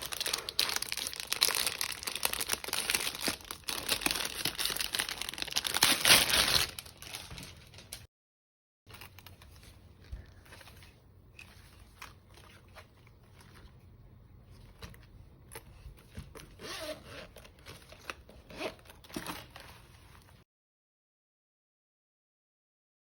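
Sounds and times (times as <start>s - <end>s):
packaging crinkling and tearing: 0.0s - 8.1s.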